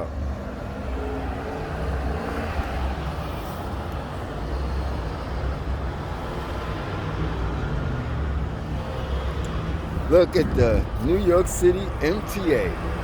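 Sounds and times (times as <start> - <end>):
city street traffic: 0.0 - 13.0
heavy vehicle engine rumble: 0.0 - 13.0.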